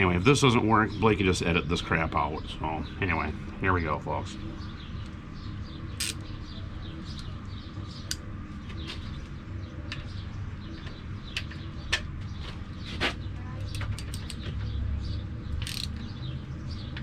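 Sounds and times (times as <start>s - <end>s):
jack metallic clicks and squeaks: 6.0s - 6.2s, 13.0s - 14.7s, 15.6s - 16.1s.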